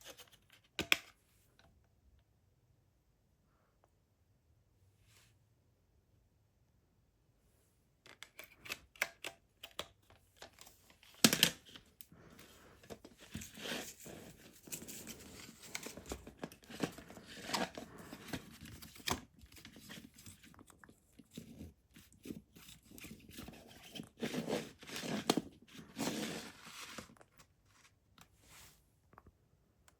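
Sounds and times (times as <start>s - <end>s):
plastic and paper crinkling: 10.3s - 28.0s.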